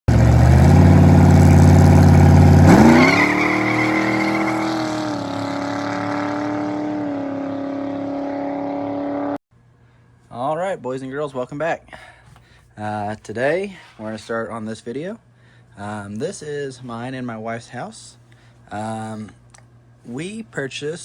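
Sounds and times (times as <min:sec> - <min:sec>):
engine revving: 0:00.1 - 0:09.4.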